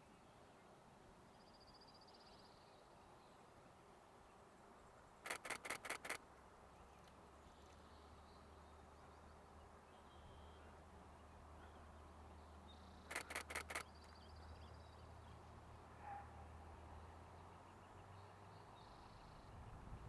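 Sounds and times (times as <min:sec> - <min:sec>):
camera shutter clicks: 0:05.3 - 0:06.2, 0:13.1 - 0:13.9
faint bird chirps: 0:12.7 - 0:15.0.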